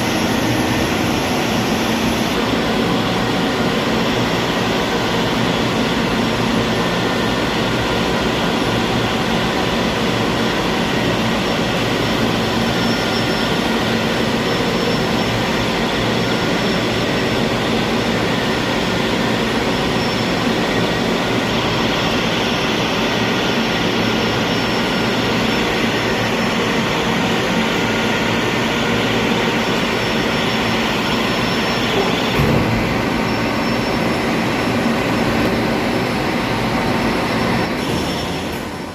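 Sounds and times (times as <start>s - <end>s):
engine room machinery drone: 0.0s - 38.9s.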